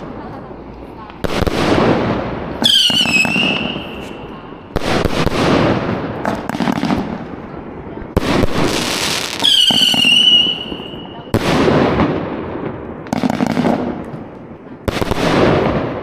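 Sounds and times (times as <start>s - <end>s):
firework shell whistling: 2.6s - 4.3s, 8.6s - 11.3s.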